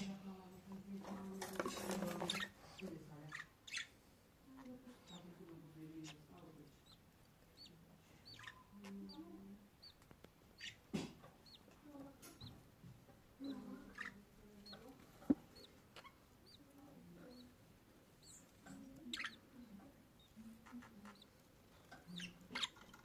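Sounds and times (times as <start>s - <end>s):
budgerigar chick cheeping: 7.6s - 9.2s, 11.4s - 11.7s.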